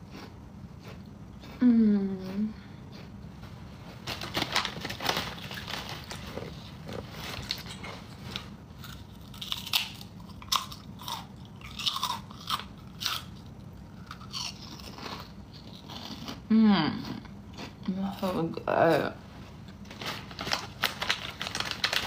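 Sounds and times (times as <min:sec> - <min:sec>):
person crunching chips: 0:08.4 - 0:16.5, 0:19.8 - 0:22.0.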